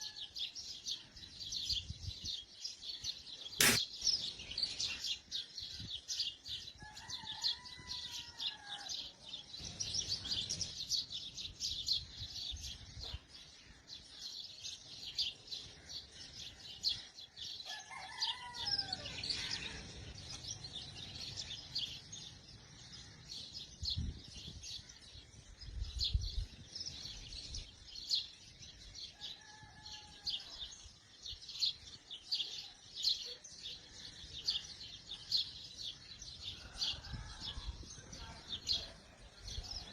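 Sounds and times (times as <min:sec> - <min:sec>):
bird arched call: 0:03.6 - 0:03.8
small birds chirping: 0:19.0 - 0:39.9.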